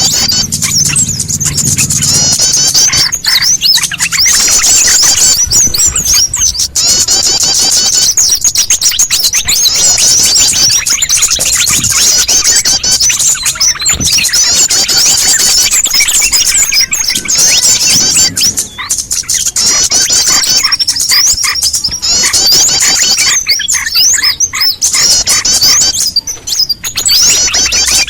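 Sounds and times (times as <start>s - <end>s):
songbirds chirping and twittering: 0.0s - 28.0s.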